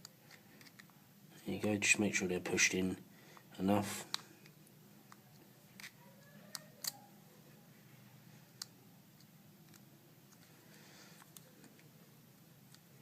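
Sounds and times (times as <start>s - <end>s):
small phone parts clicking: 0.0s - 0.9s, 4.1s - 7.0s.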